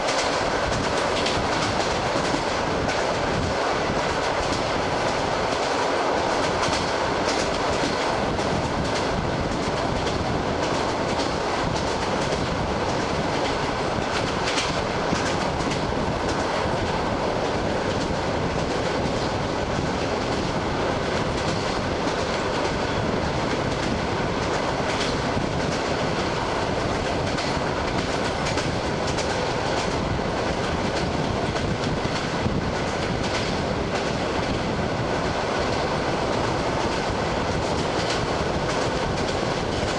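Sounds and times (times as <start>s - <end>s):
wheels clacking over rail joints: 0.0s - 16.9s, 19.9s - 34.6s
train wheels rumbling on rails: 0.0s - 39.9s.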